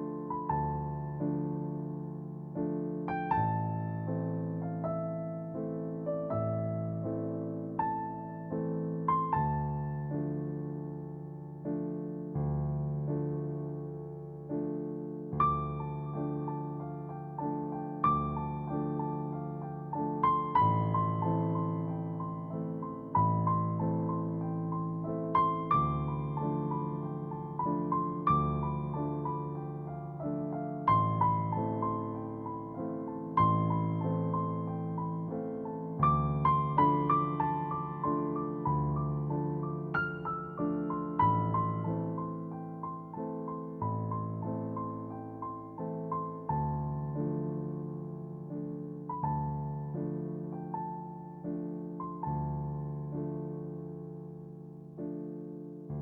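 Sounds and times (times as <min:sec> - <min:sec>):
gentle piano music: 0:00.0 - 0:56.0.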